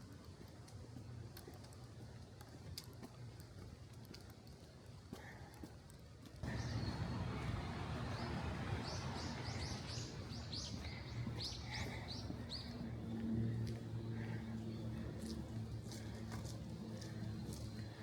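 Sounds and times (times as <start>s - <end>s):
songbird chirping: 6.4s - 17.9s
road traffic drone: 6.4s - 18.0s.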